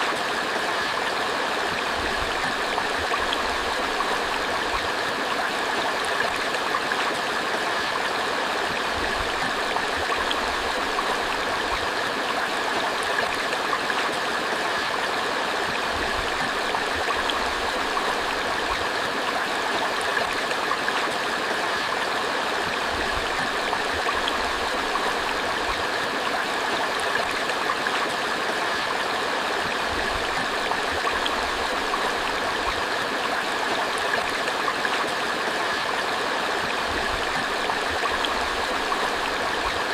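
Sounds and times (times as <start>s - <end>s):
creek water babbling: 0.0s - 39.9s.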